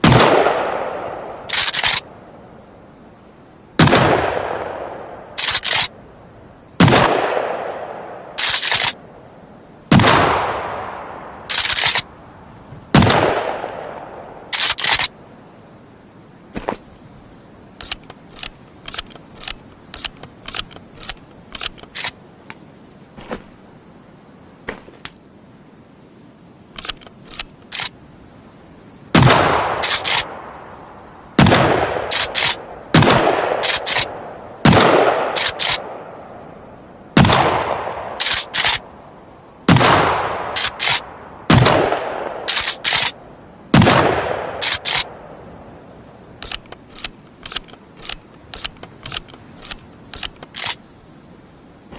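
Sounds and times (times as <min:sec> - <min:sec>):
shotgun blasts with echo: 0:00.0 - 0:02.0, 0:03.8 - 0:05.8, 0:06.8 - 0:09.0, 0:09.9 - 0:11.0, 0:12.9 - 0:14.1, 0:31.4 - 0:36.0, 0:37.2 - 0:38.7, 0:39.7 - 0:43.1, 0:43.7 - 0:45.1
sharp clicks: 0:01.5 - 0:02.1, 0:05.4 - 0:06.0, 0:08.4 - 0:09.0, 0:11.5 - 0:12.1, 0:14.5 - 0:15.1, 0:17.8 - 0:22.6, 0:26.7 - 0:28.0, 0:29.8 - 0:30.3, 0:32.1 - 0:32.6, 0:33.6 - 0:34.1, 0:35.4 - 0:35.9, 0:37.9 - 0:38.8, 0:40.6 - 0:41.1, 0:42.5 - 0:43.2, 0:44.6 - 0:45.1, 0:46.4 - 0:50.9.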